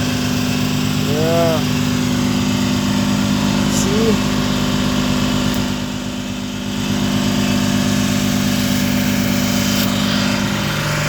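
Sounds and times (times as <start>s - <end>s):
ship engine machinery humming: 0.0s - 6.6s.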